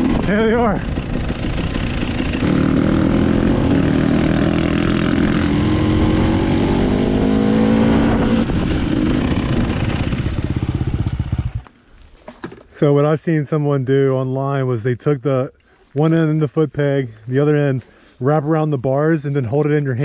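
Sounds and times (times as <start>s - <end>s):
dirt bike engine running: 0.0s - 11.7s.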